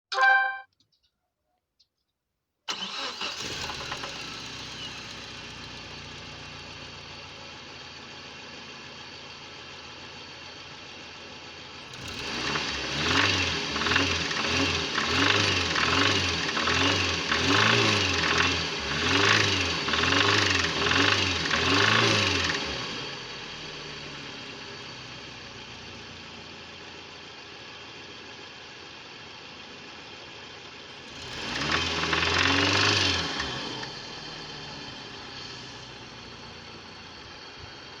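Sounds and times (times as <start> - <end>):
car engine starting and idling: 2.7 - 10.7, 11.4 - 38.0
engine revving blips: 12.0 - 22.9.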